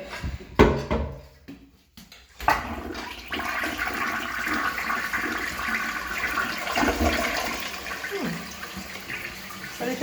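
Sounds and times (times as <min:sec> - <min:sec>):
toilet flushing: 0:02.4 - 0:10.0.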